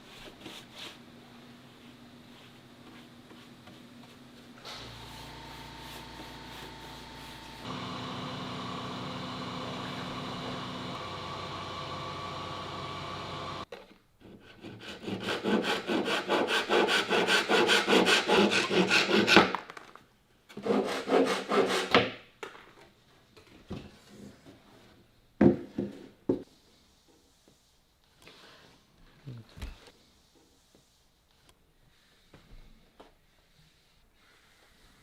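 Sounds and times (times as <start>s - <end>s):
steady machine hum: 4.8s - 13.6s
hand sawing wood: 14.2s - 19.5s, 20.6s - 22.0s.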